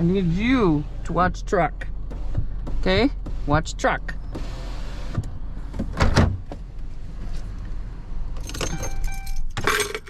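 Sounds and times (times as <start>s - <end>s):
truck engine idling: 0.0s - 5.9s
keys jangling: 8.4s - 10.0s.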